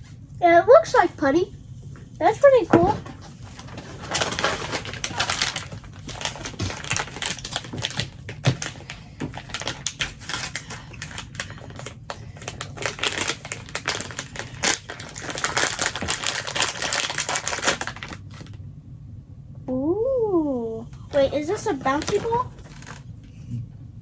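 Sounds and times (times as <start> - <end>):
plastic packaging crackling: 3.1 - 18.6, 21.2 - 23.1.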